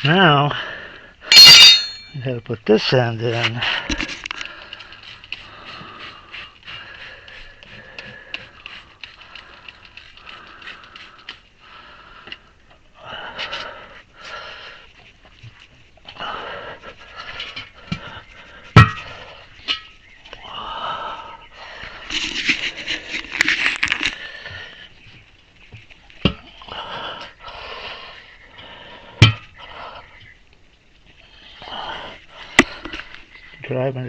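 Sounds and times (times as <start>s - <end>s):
tire iron scraping: 1.2s - 9.2s, 16.3s - 20.1s
metal clank with ring: 1.3s - 2.2s
heavy strained breathing: 3.4s - 15.2s, 16.1s - 25.0s, 26.4s - 30.4s, 31.2s - 33.3s.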